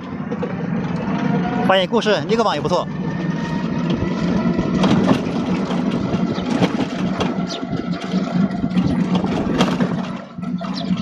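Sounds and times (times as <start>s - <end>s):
engine running steadily: 0.0s - 11.0s
knocks and clattering: 3.8s - 11.0s.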